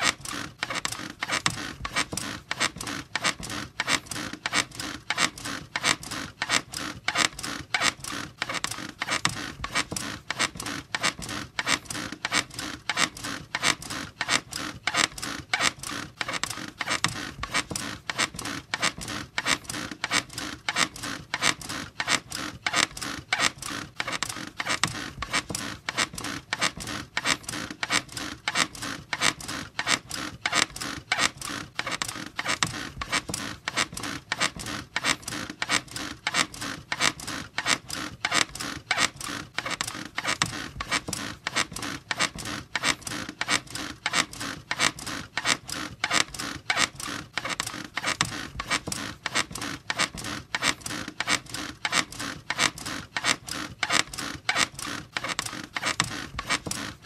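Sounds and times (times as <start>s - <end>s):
bed squeaking rhythmically: 0.0s - 57.0s.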